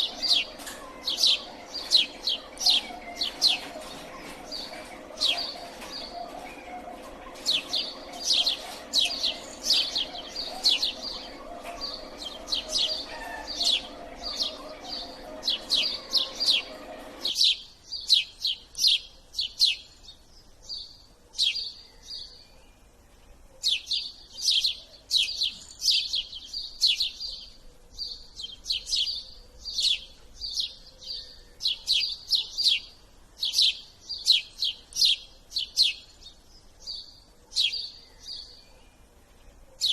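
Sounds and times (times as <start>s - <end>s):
steady hum: 0.0s - 17.3s
bird chirping: 0.0s - 39.9s.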